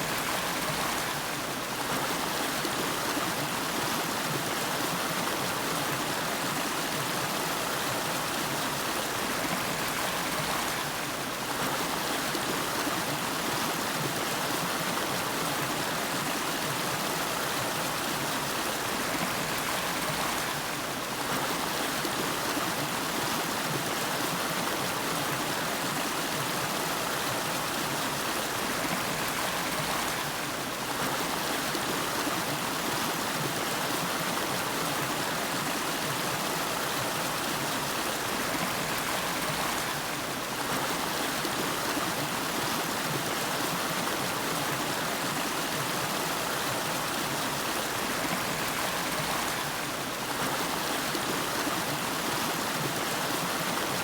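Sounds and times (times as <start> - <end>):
stream flowing over rocks: 0.0 - 54.0.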